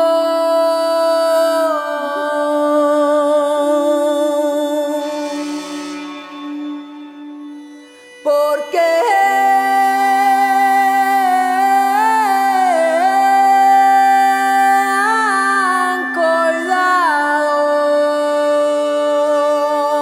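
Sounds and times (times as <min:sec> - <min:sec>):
low drone: 0:02.5 - 0:08.2.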